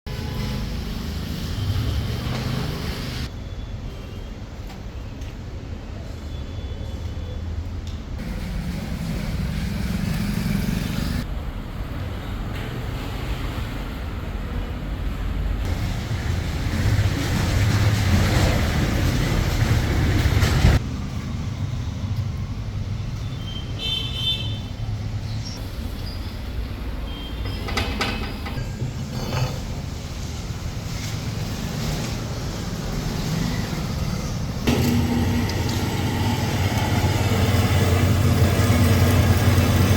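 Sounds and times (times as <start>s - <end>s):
bandsaw motor hum: 34.6s - 39.9s.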